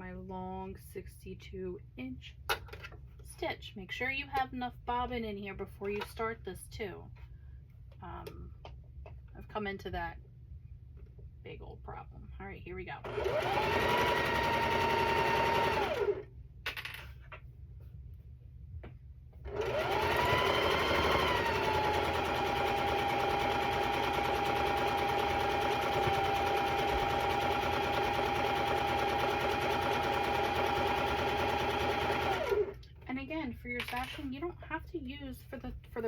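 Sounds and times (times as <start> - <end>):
sewing machine stitching: 13.0 - 16.3, 19.4 - 32.8.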